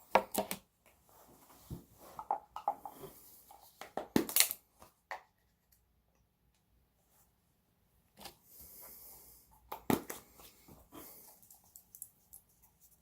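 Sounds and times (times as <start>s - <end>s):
handling rustling and clicks: 10.0s - 13.0s.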